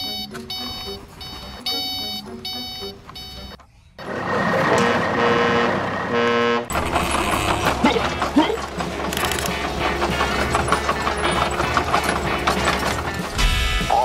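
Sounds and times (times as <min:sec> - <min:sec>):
toy beeping tune: 0:00.0 - 0:03.6
horn-like toots: 0:04.7 - 0:06.8.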